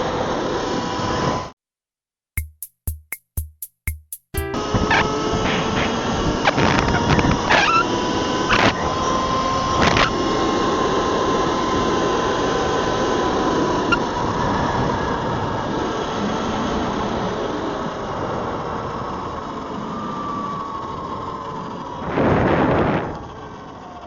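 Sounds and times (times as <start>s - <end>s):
sharp knocks: 2.4s - 4.7s.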